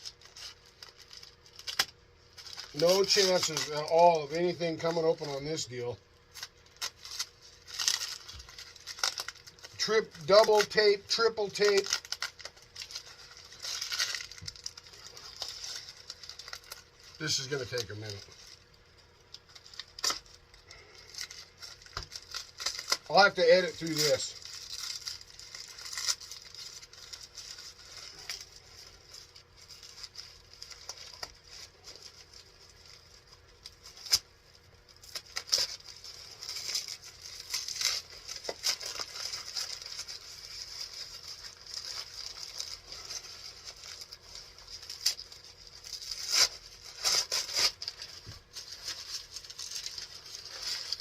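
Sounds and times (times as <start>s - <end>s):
packing tape tearing: 0.0s - 5.7s, 6.3s - 18.7s, 19.3s - 51.0s
wrapping crinkling: 0.0s - 51.0s.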